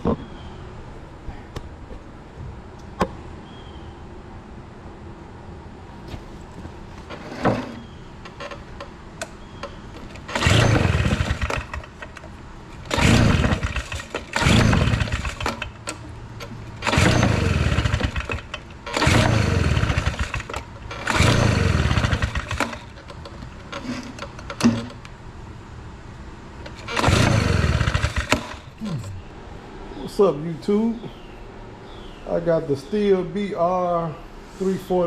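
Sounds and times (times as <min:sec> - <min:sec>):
engine cranking without starting: 0:09.6 - 0:25.0, 0:26.6 - 0:29.2.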